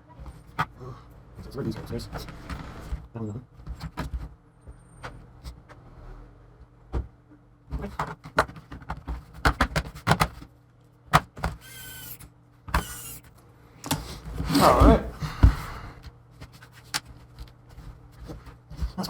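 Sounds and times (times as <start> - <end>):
small electric motor whirring: 11.6 - 13.3.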